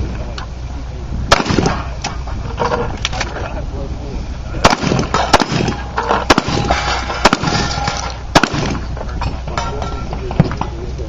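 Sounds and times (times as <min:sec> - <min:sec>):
low rumble: 0:00.0 - 0:11.0
gunshots: 0:01.3 - 0:01.9, 0:04.6 - 0:08.9.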